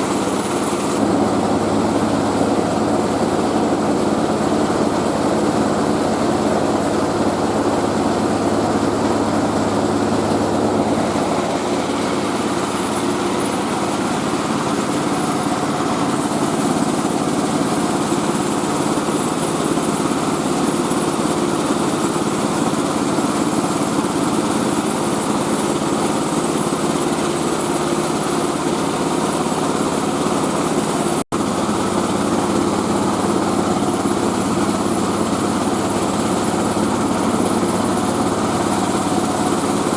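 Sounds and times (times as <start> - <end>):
milling machine droning: 0.0 - 20.6.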